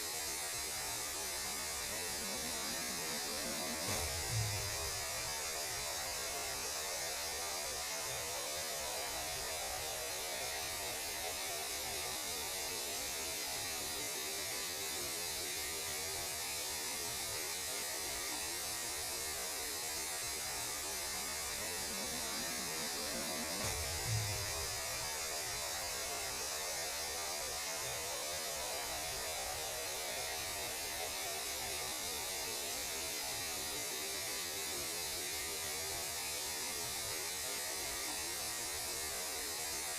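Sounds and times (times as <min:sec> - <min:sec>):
static-like hiss: 0:00.0 - 0:39.9
low hum: 0:02.2 - 0:05.3, 0:22.0 - 0:25.0.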